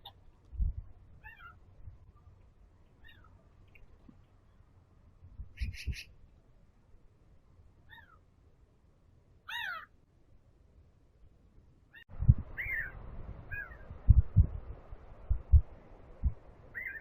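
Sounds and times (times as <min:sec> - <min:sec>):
harsh bird calls: 0:03.0 - 0:03.4, 0:05.6 - 0:06.2, 0:07.9 - 0:08.2, 0:09.5 - 0:09.9, 0:11.9 - 0:14.0, 0:16.7 - 0:17.0
low thumps: 0:14.0 - 0:16.5.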